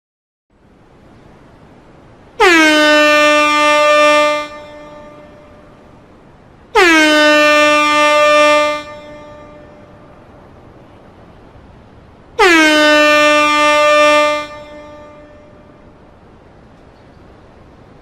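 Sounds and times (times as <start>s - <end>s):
faint background hiss: 0.5s - 18.0s
air horn blasts: 2.4s - 5.8s, 6.7s - 10.1s, 12.4s - 15.9s.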